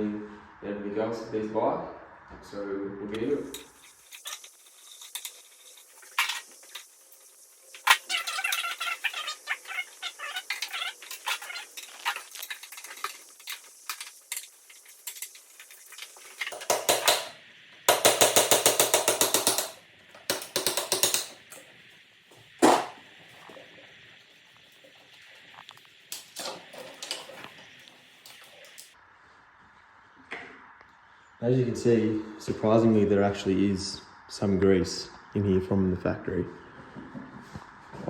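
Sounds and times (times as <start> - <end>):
ratchet clicking: 17.9 - 21.5.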